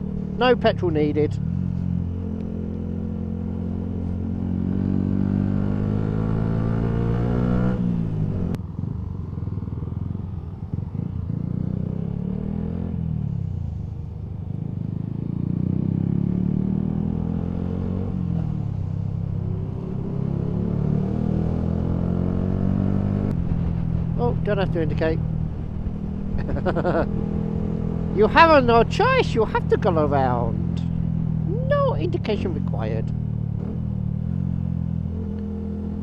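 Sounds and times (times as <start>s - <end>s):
motorcycle engine revving: 0.0s - 13.5s, 14.5s - 36.0s.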